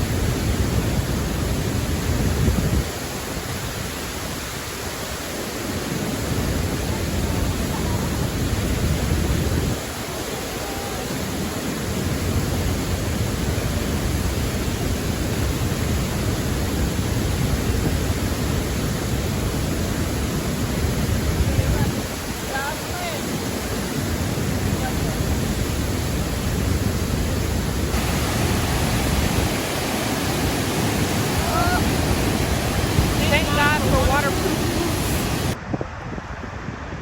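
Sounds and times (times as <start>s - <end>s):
waterfall roaring: 0.0s - 35.6s.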